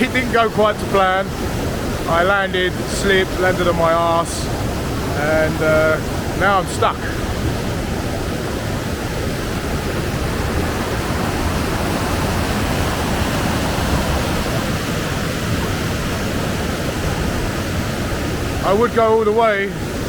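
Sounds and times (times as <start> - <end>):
waterfall roaring: 0.0 - 20.0.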